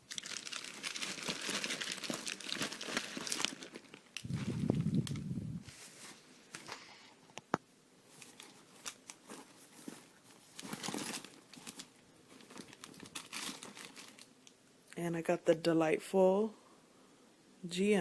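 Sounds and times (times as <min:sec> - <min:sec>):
packaging rustling and crinkling: 0:00.0 - 0:06.9, 0:08.1 - 0:14.4.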